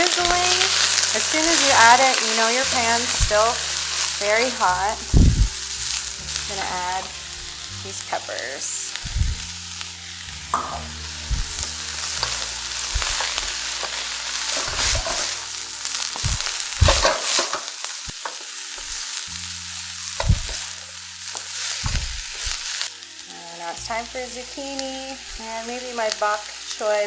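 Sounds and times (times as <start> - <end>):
vegetables sizzling in a hot pan: 0.0 - 27.0
utensil scraping and knocking pan: 10.4 - 15.4, 16.0 - 19.0.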